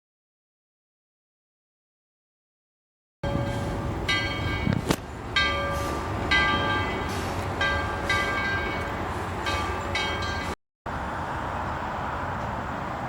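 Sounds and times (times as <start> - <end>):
train rumble: 3.2 - 13.0.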